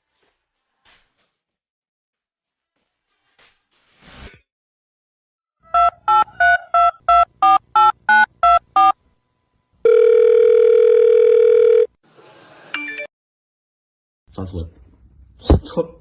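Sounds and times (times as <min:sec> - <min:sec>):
telephone keypad tones: 0:07.1 - 0:08.9, 0:09.9 - 0:11.9
steady telephone line tone: 0:07.1 - 0:09.0, 0:09.9 - 0:11.9.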